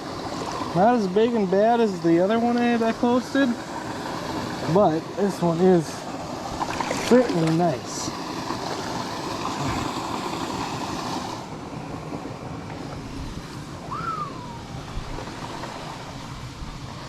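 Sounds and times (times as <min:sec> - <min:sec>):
water rushing through spillway: 0:00.0 - 0:17.0
short rising chirp: 0:13.9 - 0:14.8.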